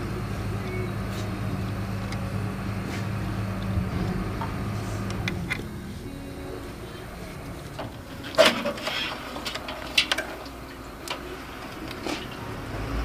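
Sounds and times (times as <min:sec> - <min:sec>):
hand tools clicking and knocking: 0:07.8 - 0:11.2.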